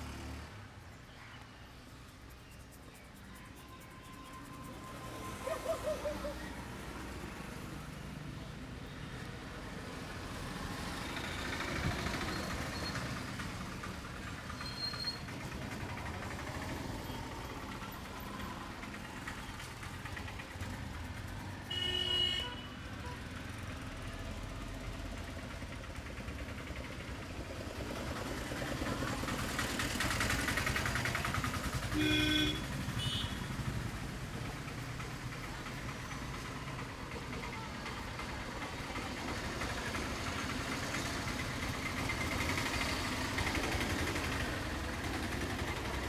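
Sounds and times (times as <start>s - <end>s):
street traffic: 0.0s - 46.0s
vehicle horn toots: 21.6s - 23.2s, 31.9s - 33.6s.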